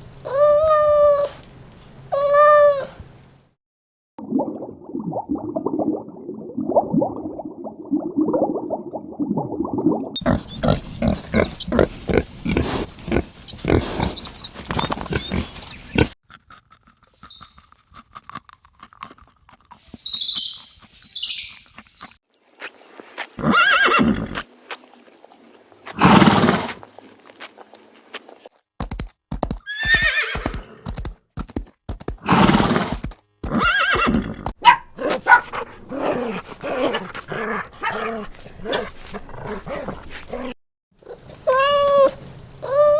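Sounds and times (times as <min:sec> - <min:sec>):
horses neighing: 0:10.2 - 0:16.2, 0:23.4 - 0:24.4, 0:26.0 - 0:26.8, 0:29.6 - 0:31.1, 0:32.2 - 0:34.6.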